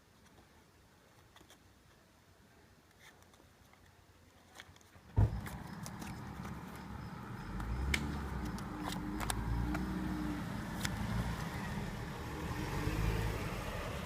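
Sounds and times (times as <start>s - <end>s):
car passing by: 5.5s - 14.0s
sharp clicks: 7.5s - 9.9s.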